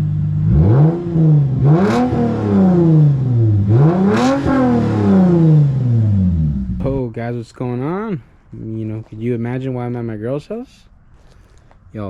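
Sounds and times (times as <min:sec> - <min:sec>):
car engine revving: 0:00.0 - 0:07.2.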